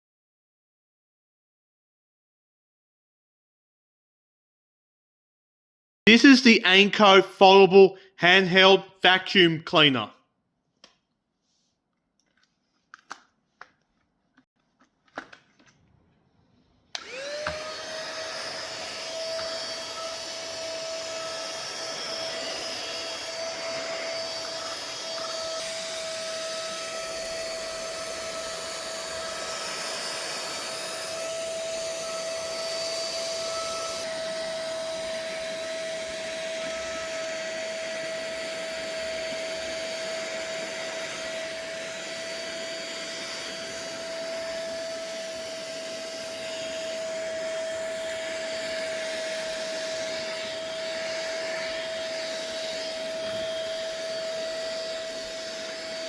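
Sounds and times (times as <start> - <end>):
handheld vacuum cleaner running: 16.9 - 56.0.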